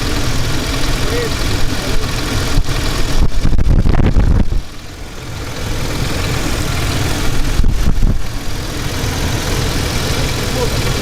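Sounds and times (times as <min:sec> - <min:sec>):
car engine idling: 0:00.0 - 0:11.0
low rumble with crackly knocks: 0:00.0 - 0:11.0.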